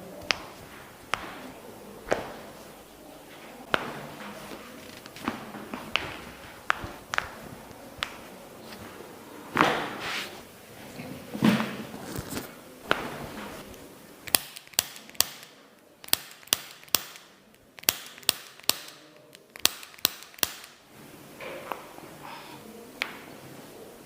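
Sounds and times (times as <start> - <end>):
soft rustling movement: 0.0 - 13.9.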